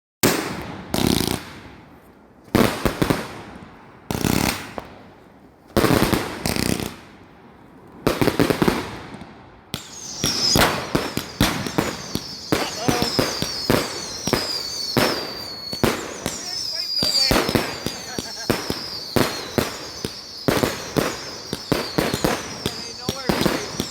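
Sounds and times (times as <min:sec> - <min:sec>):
firework bangs with crackle: 0:00.2 - 0:01.9, 0:02.5 - 0:05.1, 0:05.8 - 0:07.2, 0:08.0 - 0:23.9
high falling whistle: 0:09.8 - 0:23.9
rapid firework pops: 0:09.8 - 0:23.9.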